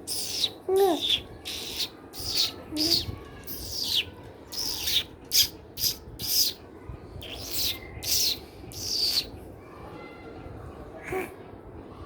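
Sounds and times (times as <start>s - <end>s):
person imitating bird chirps: 0.1s - 4.0s.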